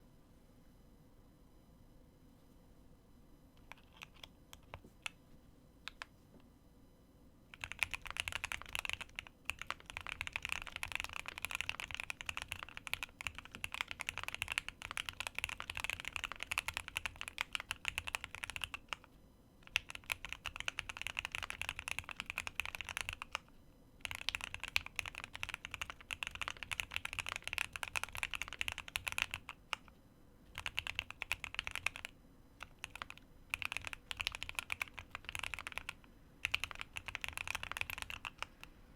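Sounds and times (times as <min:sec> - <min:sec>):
mechanical keyboard typing: 0:03.6 - 0:05.2, 0:05.9 - 0:06.1, 0:07.5 - 0:29.9, 0:30.5 - 0:38.8.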